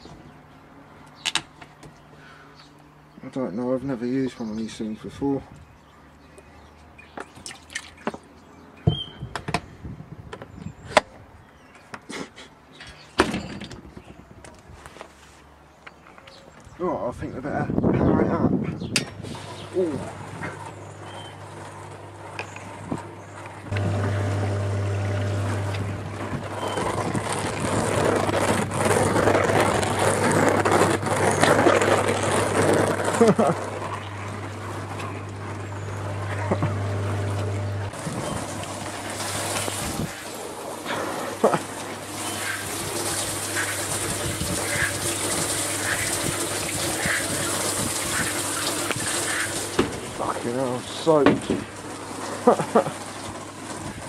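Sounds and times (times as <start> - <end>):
water churning and splashing: 7.4 - 8.0, 23.6 - 36.4, 37.9 - 54.0
dishwasher pump motor humming: 19.4 - 31.1, 31.8 - 54.0.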